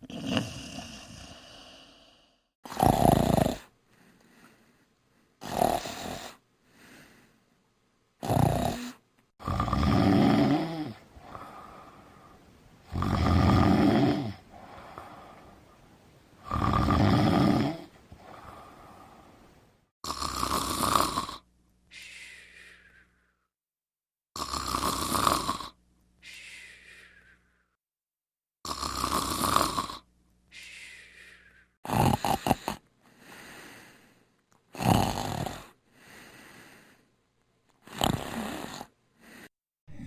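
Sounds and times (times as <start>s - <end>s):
person snoring: 0.0s - 4.6s, 5.4s - 7.3s, 8.2s - 15.6s, 16.4s - 19.4s, 20.0s - 21.4s, 24.4s - 27.6s, 28.6s - 37.0s, 37.8s - 40.0s.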